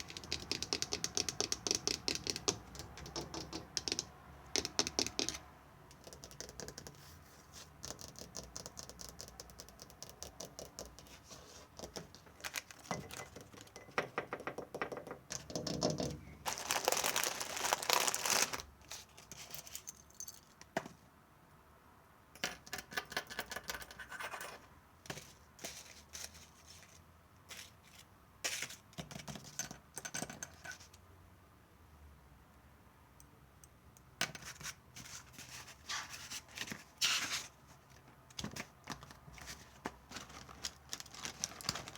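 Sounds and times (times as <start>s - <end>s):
scratching and scraping on object: 23.8s - 27.8s.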